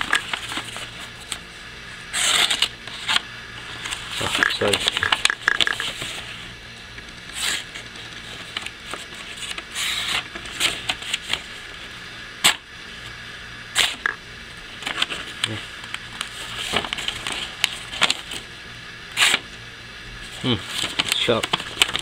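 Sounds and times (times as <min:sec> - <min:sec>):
knife blade slicing paper: 0:02.1 - 0:02.7.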